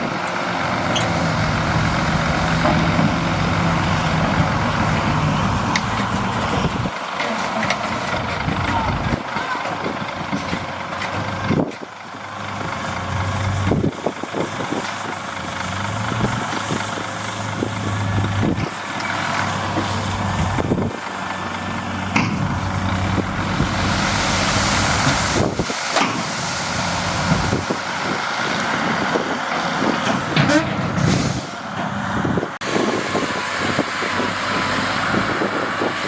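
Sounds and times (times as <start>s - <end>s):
heavy diesel engine running: 0.0s - 36.0s.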